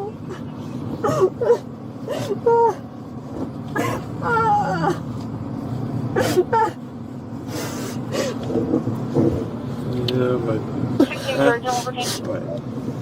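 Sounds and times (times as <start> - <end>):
vehicle rumble: 0.0 - 13.0
woman sobbing: 0.2 - 2.9, 6.2 - 6.8.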